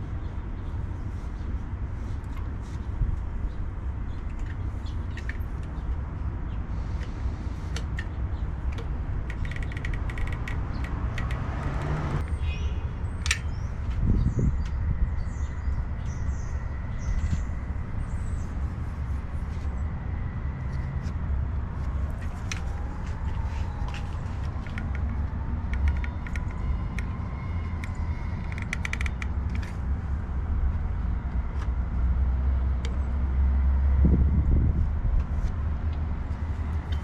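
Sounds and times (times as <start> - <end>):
low outdoor rumble: 0.0 - 37.0
small clicks: 7.7 - 12.2, 23.9 - 27.1, 27.7 - 29.8.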